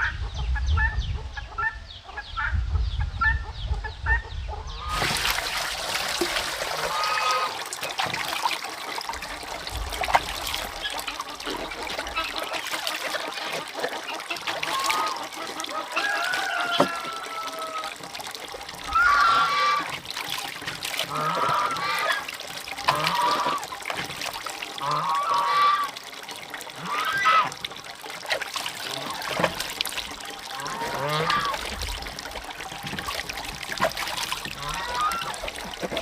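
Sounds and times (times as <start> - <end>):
water trickling: 4.8 - 36.0.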